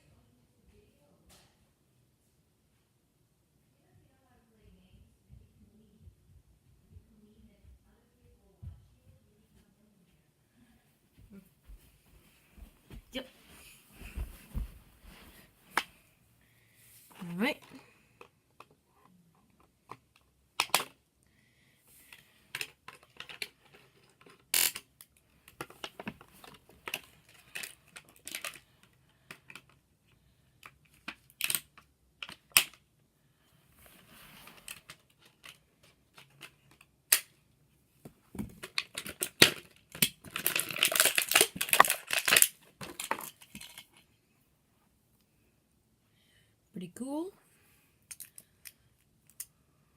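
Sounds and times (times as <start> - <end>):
plastic packaging clicking: 38.6 - 43.9
plastic packaging crinkling: 38.8 - 43.8.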